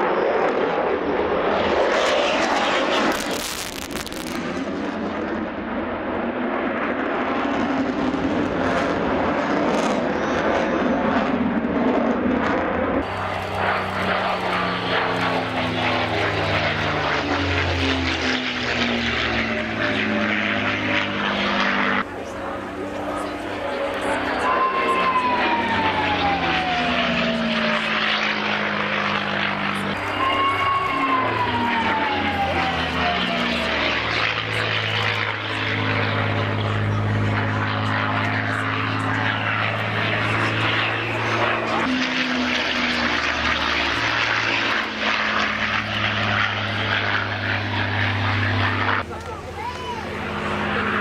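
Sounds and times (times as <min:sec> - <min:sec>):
propeller aircraft engines: 0:00.0 - 0:51.0
high whine falling in pitch: 0:13.0 - 0:51.0.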